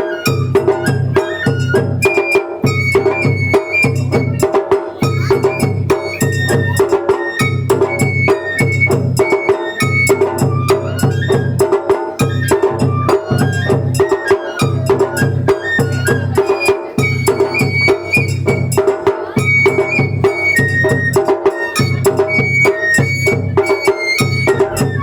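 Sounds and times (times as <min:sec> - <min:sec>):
bamboo flute melody: 0:00.0 - 0:25.0
sharp percussion strikes: 0:00.0 - 0:25.0
taiko drums: 0:00.0 - 0:25.0.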